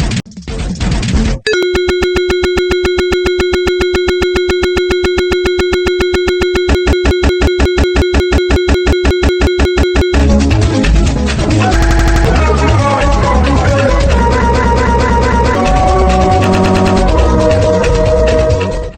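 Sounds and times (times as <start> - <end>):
fast regular clicks: 0.4 - 18.4
steady electronic tone: 1.5 - 10.4
music: 9.4 - 18.9.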